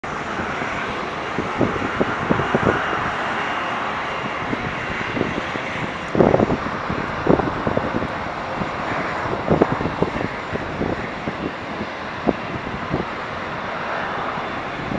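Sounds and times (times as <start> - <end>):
jet engines rushing: 0.0 - 14.9
wind buffeting microphone: 0.0 - 14.9.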